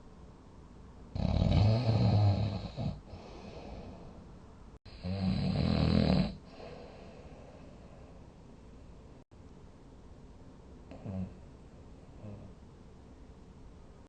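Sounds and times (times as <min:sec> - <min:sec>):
person snoring loudly: 0:01.2 - 0:03.8, 0:04.9 - 0:06.7.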